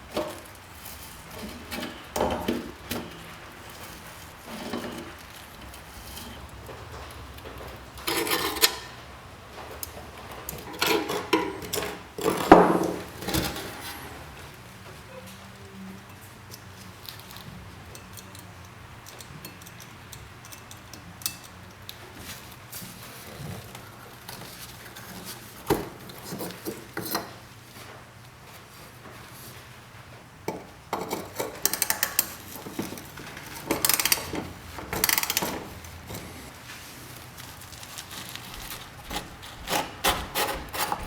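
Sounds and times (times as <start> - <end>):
hard parts clinking and rattling: 30.9 - 36.5.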